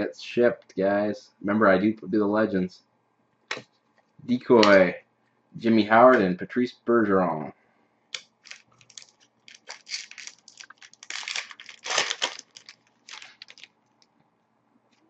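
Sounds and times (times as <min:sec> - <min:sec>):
cards being handled: 0:08.4 - 0:13.7
card pack wrapper crinkling and tearing: 0:08.4 - 0:13.8.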